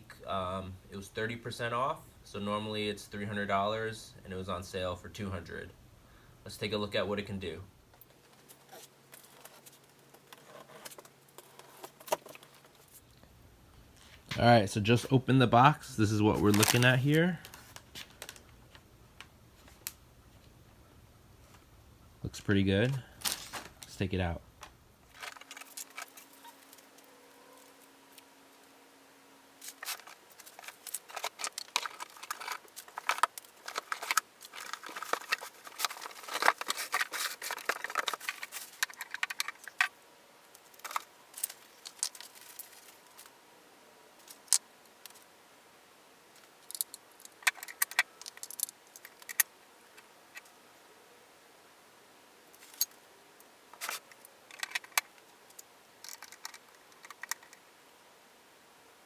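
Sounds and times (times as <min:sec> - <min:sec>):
packaging rustling and crinkling: 0:08.2 - 0:13.0, 0:16.2 - 0:18.8, 0:23.1 - 0:23.9, 0:25.1 - 0:28.2, 0:29.6 - 0:43.3, 0:46.4 - 0:49.5, 0:53.7 - 0:57.6
plastic parts clicking and knocking: 0:09.1 - 0:12.8, 0:24.6 - 0:27.0, 0:29.6 - 0:40.0, 0:40.6 - 0:43.3, 0:46.4 - 0:49.5, 0:53.8 - 0:57.6.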